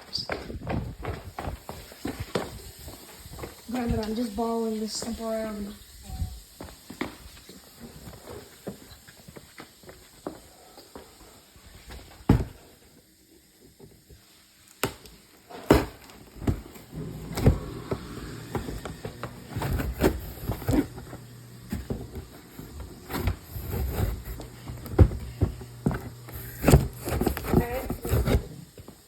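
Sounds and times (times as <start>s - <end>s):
cardboard box being cut and handled: 15.7s - 28.8s.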